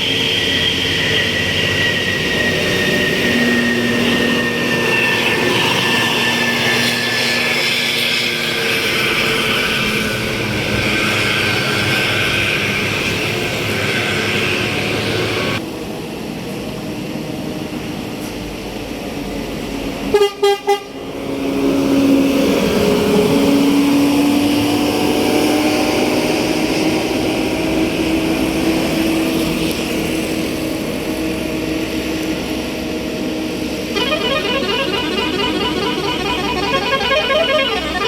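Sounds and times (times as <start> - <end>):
bus horn toots: 20.1 - 21.0, 33.8 - 38.0
horn playing warbling tune: 33.9 - 38.0.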